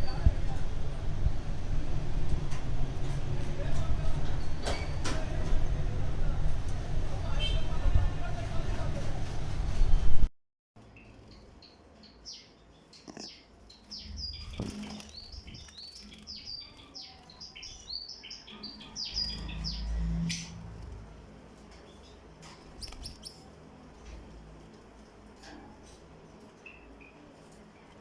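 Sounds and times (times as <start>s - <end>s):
parrots chirping: 10.8s - 21.0s, 21.6s - 24.2s
low rumble: 18.7s - 22.1s.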